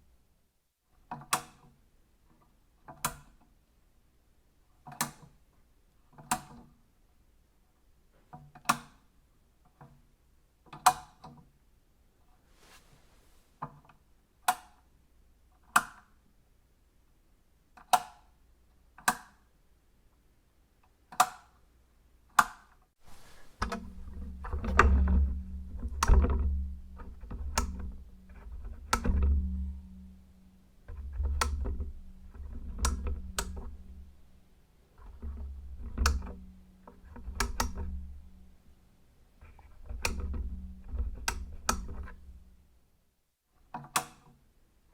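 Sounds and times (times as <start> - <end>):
switches clicking: 39.6 - 42.5.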